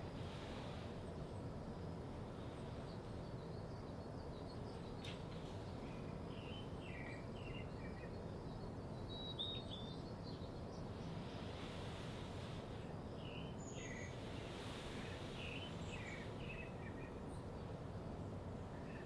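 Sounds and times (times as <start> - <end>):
low background hiss: 0.0 - 19.0
small birds chirping: 1.0 - 11.9, 12.8 - 19.0
faint click: 5.0 - 5.4.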